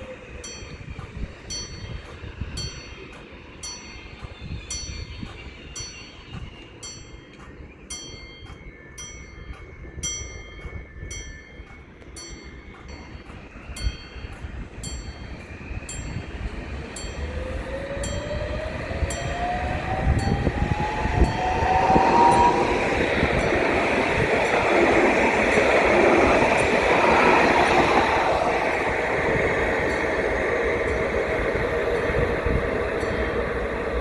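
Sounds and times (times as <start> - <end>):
rising whine: 0.0 - 34.0
train rumbling past: 0.0 - 34.0
bell-like ding: 0.4 - 17.4.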